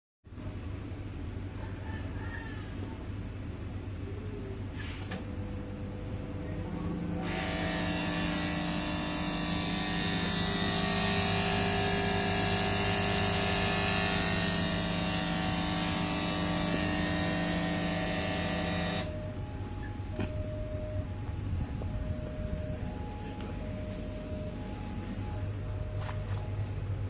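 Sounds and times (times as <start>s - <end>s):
transformer electrical hum: 0.3s - 27.0s.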